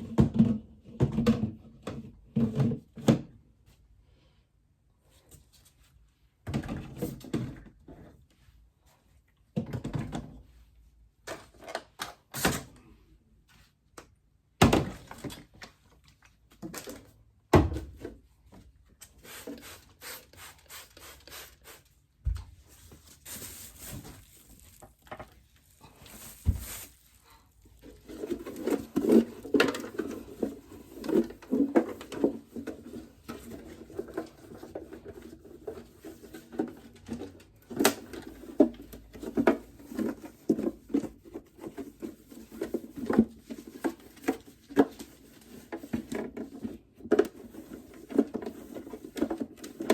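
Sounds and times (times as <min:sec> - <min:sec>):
objects knocking and thunking: 0:00.0 - 0:03.4, 0:06.4 - 0:08.2, 0:09.4 - 0:10.6, 0:14.5 - 0:18.8, 0:23.8 - 0:49.9.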